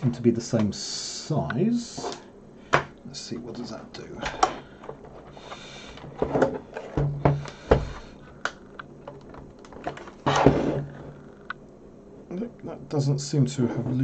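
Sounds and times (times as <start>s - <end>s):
plastic scraping: 4.3s - 11.2s.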